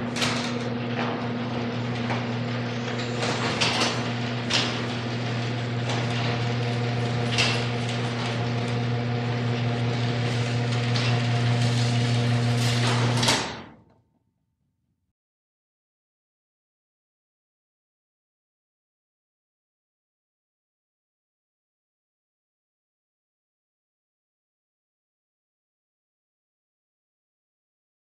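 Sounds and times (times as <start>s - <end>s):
garage door rattling on track: 0.0s - 13.8s
garage door opener motor hum: 0.0s - 13.9s.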